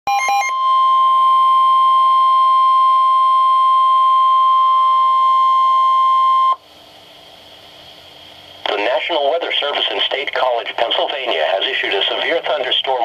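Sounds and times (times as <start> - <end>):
steady high-pitched alarm tone: 0.1 - 6.6
faint radio hiss: 6.6 - 13.0.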